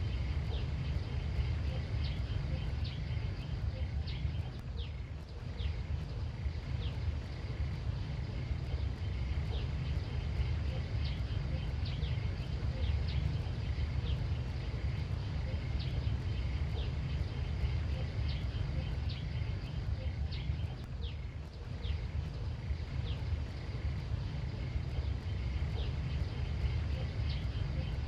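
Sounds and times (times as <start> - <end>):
steady low rumble: 0.0 - 28.0.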